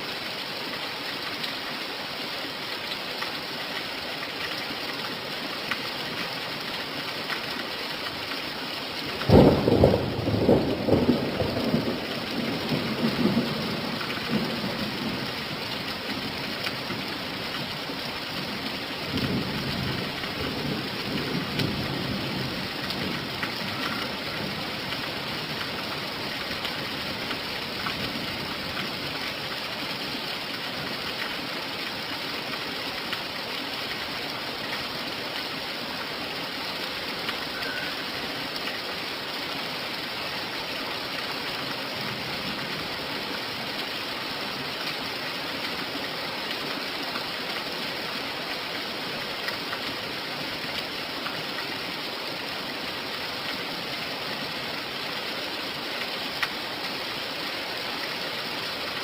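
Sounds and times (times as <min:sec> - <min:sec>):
steady rain hissing: 0:00.0 - 0:59.0
thunder rumbling: 0:09.3 - 0:15.2.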